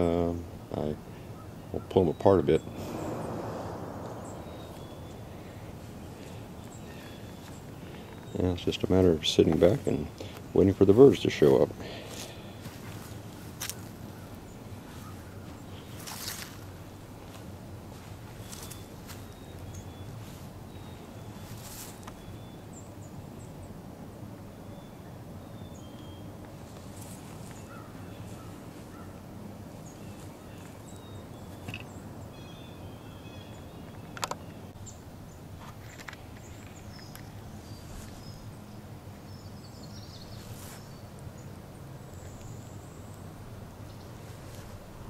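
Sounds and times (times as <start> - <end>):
bird chirps: 1.4 - 8.5
low rumble: 2.6 - 7.1.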